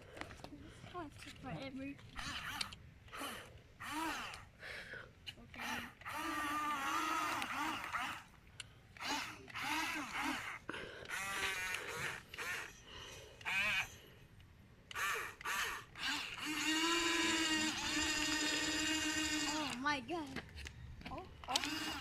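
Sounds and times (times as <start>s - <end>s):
toy electric motor whining: 2.2s - 4.5s, 5.4s - 8.4s, 9.0s - 14.1s, 14.9s - 20.7s, 21.4s - 22.0s.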